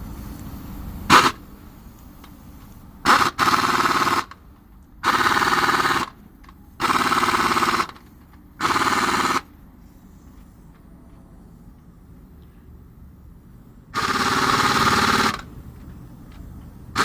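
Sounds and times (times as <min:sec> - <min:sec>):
pneumatic impact wrench hammering: 0:01.1 - 0:01.4, 0:03.0 - 0:04.4, 0:05.0 - 0:06.2, 0:06.8 - 0:09.5, 0:13.9 - 0:15.5.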